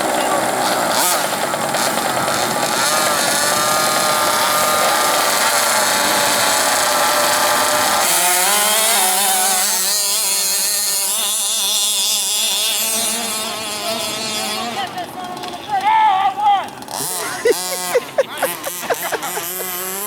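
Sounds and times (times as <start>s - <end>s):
two-stroke engine running hard: 0.0s - 20.0s.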